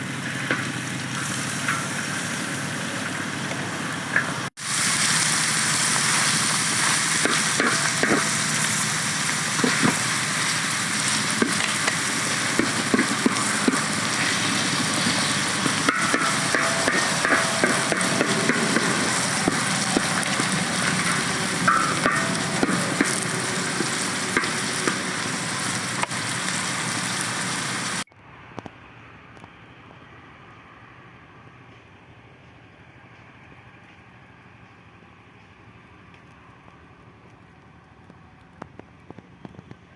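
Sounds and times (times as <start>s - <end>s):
food sizzling in a pan: 4.6s - 28.0s.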